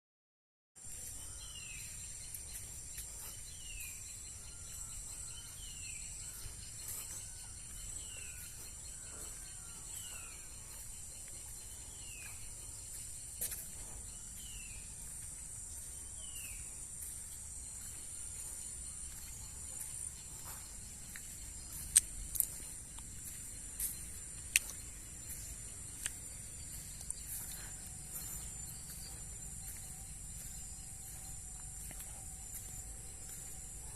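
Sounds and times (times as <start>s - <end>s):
high-pitched insect chorus: 0.8s - 33.9s.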